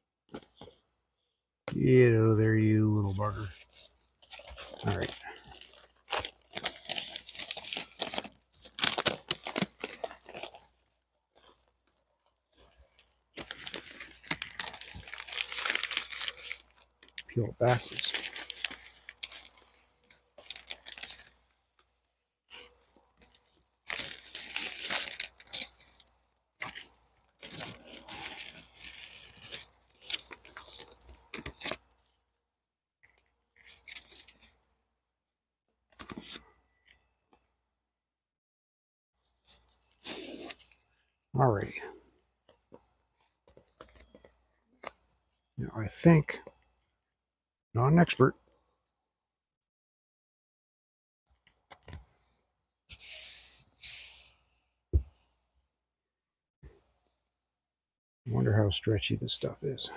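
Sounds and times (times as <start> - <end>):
adhesive material peeled apart: 3.6 - 10.8, 12.8 - 19.8, 22.5 - 31.8.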